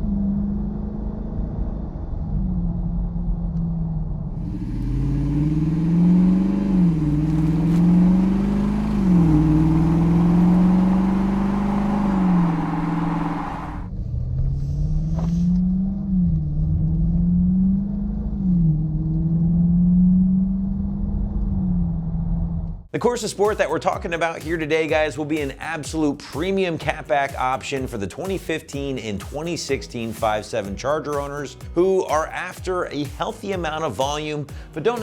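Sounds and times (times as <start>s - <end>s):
car engine accelerating through gears: 0.0s - 22.9s
wind and road noise: 0.0s - 22.9s.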